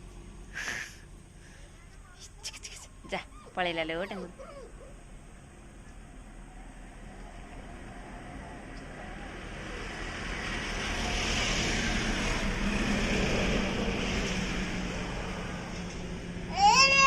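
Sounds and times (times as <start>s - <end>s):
motor vehicle passing by: 6.4s - 16.6s.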